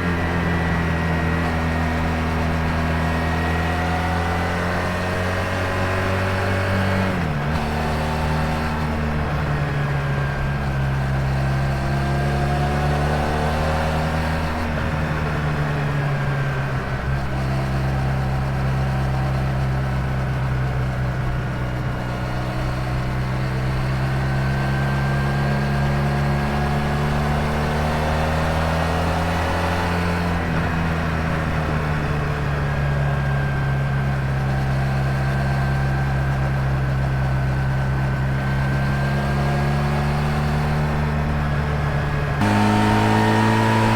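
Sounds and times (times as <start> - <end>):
motorcycle engine changing gears: 37.6 - 43.9.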